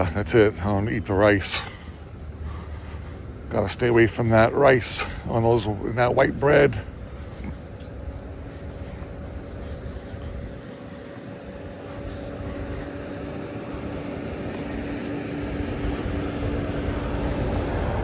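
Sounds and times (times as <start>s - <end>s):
low rumble on microphone: 0.0s - 18.0s
steady mechanical drone: 0.0s - 18.0s.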